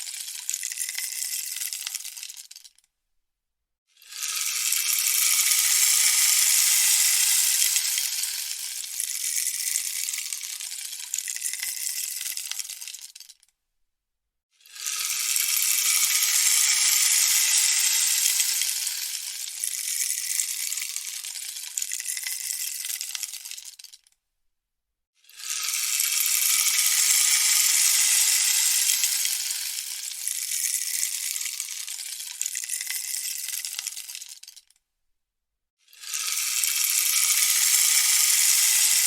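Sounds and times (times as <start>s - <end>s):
rainstick rattling hiss: 4.0s - 13.3s, 14.7s - 24.0s, 25.3s - 34.7s, 36.0s - 39.0s.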